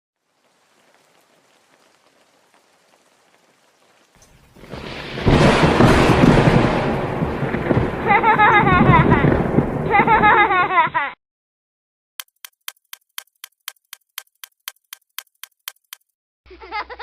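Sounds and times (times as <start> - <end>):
faint crackling hiss: 0.2 - 5.3.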